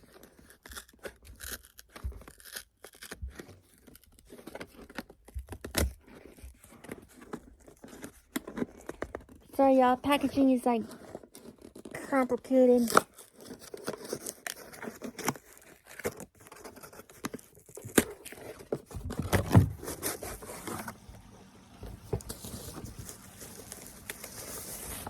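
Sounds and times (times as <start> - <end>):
packaging clicking and crinkling: 0.0 - 21.3, 22.2 - 25.0.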